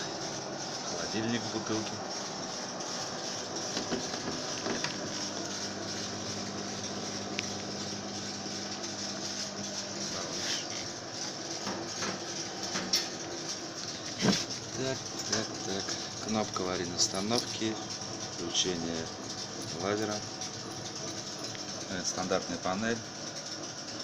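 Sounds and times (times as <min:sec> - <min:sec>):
small electric motors humming: 0:00.0 - 0:24.0.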